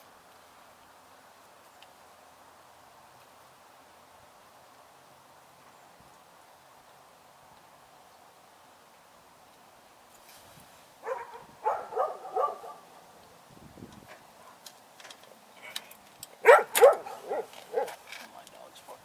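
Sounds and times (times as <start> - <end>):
dog yapping: 11.0 - 12.8, 16.4 - 18.0.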